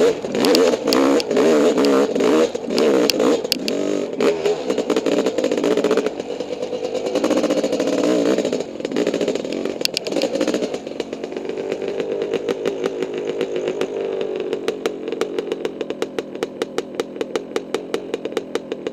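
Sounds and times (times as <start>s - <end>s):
dirt bike engine revving: 0.0s - 18.9s.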